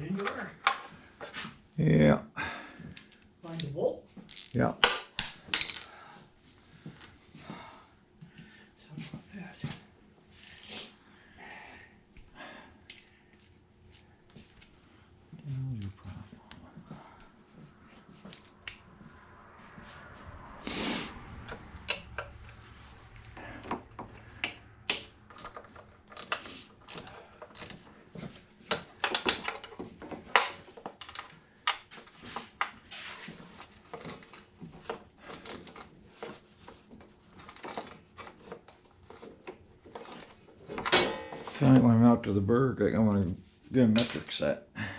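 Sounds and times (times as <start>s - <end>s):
hand tools and metal parts clinking: 5.4s - 6.0s, 21.9s - 31.3s, 44.0s - 44.4s.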